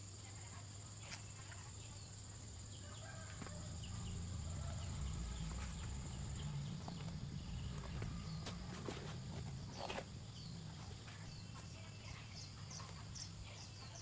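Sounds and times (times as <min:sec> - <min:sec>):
low rumble: 0:03.2 - 0:10.9.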